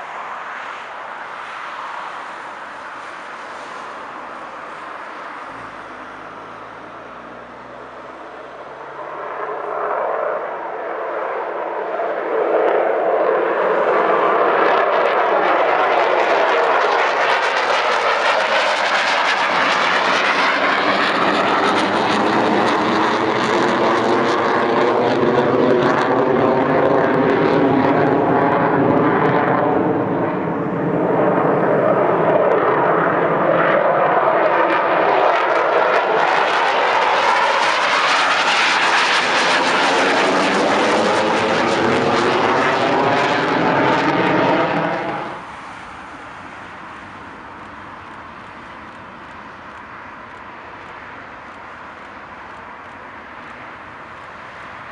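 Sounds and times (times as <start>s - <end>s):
fighter jets taking off: 0.0s - 54.9s.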